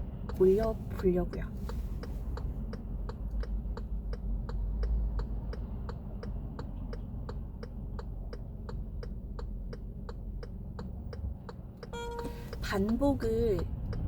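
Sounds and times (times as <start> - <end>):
car interior rumble: 0.0 - 14.0
turn signal ticking: 0.0 - 14.0.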